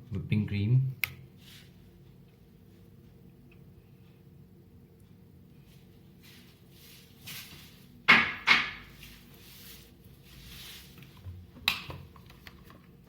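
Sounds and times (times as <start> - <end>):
sharp knocks: 8.1 - 8.9
soft swishing: 8.9 - 11.0.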